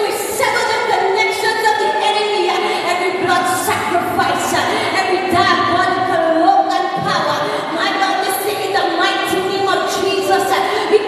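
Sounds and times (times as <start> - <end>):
woman singing worship song: 0.0 - 11.0.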